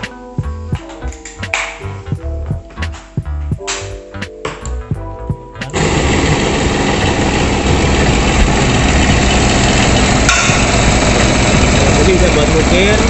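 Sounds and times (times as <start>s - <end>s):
saw motor running: 5.7s - 13.0s.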